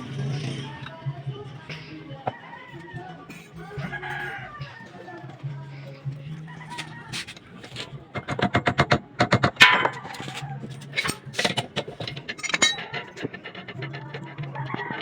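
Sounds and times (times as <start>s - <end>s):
metallic taps and clinks: 8.2s - 13.3s.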